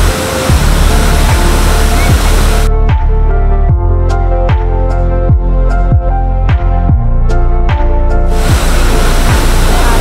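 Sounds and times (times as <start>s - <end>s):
loud hissing noise: 0.0s - 2.7s, 8.3s - 10.0s
electronic dance music: 0.6s - 2.7s.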